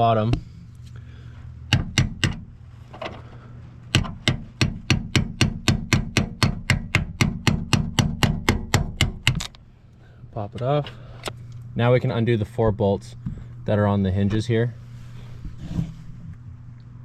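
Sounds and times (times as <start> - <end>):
hammer tapping metal punch: 1.7 - 2.5, 3.9 - 9.6.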